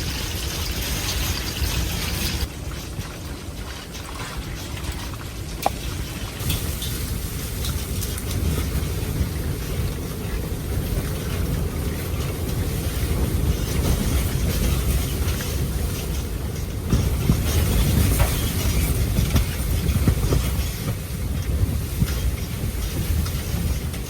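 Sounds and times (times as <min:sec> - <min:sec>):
wind rumble on microphone: 0:00.0 - 0:24.0
blizzard wind gusting: 0:06.4 - 0:24.0.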